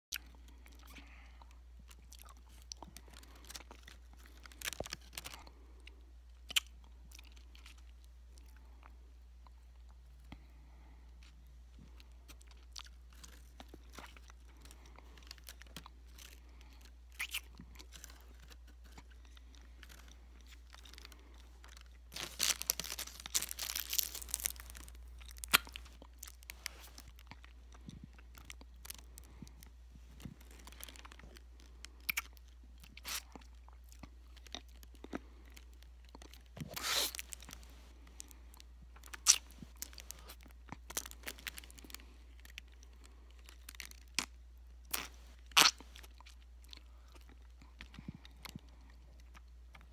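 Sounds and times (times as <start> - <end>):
person slurping and biting candy: 30.3 - 37.9.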